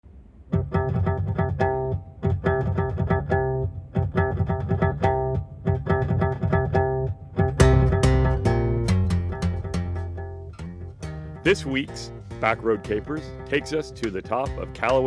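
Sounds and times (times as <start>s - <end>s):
plucked guitar pattern: 0.4s - 15.0s
bass line: 0.5s - 15.0s.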